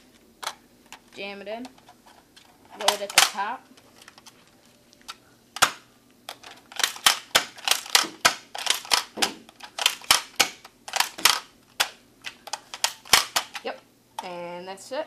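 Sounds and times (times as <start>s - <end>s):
plastic dart blaster clacks: 6.8s - 13.6s.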